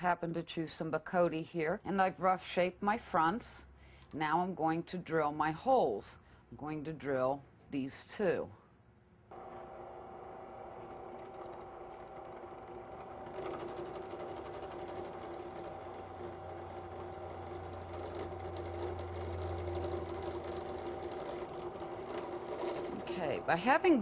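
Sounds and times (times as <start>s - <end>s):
electric drill whining: 9.3s - 23.4s
drill bit cutting wood: 9.3s - 23.5s.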